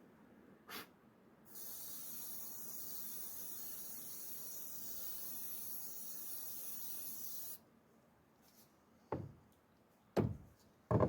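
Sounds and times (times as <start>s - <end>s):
knock: 9.1s - 9.4s, 10.2s - 11.0s.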